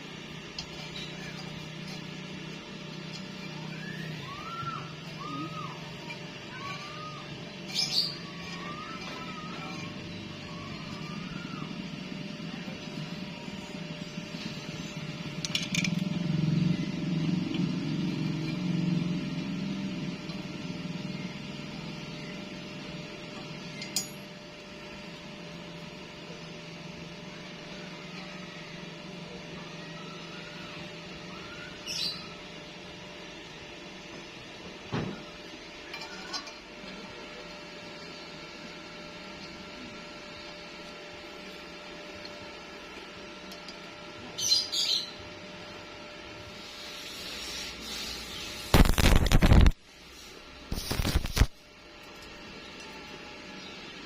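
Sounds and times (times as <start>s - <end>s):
steady low hum: 0.0s - 54.0s
welding arc crackling: 46.6s - 52.5s.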